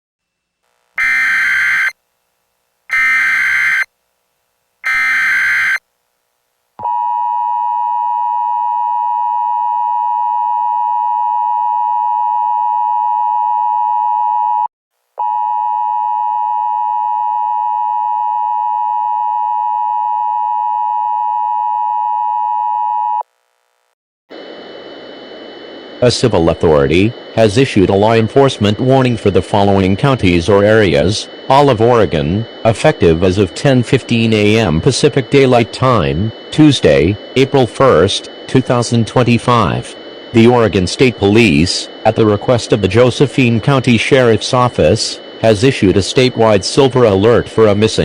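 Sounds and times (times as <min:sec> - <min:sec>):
screeching digital data bursts: 0:01.0 - 0:02.0, 0:02.9 - 0:03.9, 0:04.8 - 0:05.8, 0:28.6 - 0:47.9.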